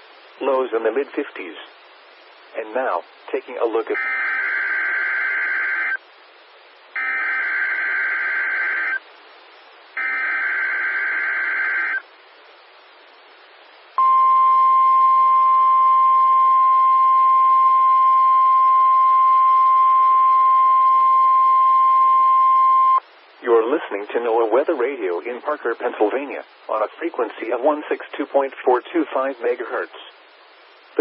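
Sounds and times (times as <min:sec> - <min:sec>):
buzzing digital data bursts: 0:07.0 - 0:09.0.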